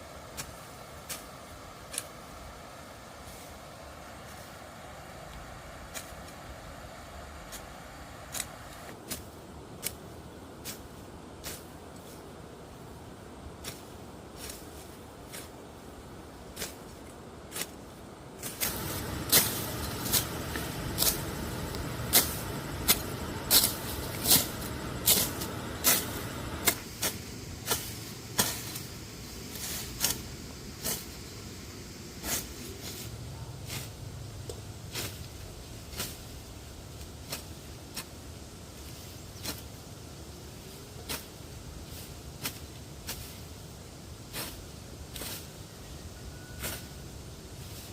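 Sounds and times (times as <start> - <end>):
rough low rumbling: 18.7 - 28.2.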